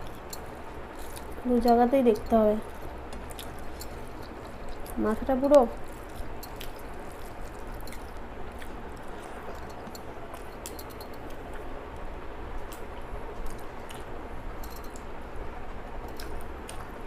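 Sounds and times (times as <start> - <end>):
person chewing food: 0.0 - 5.0, 5.7 - 15.1, 16.0 - 17.0.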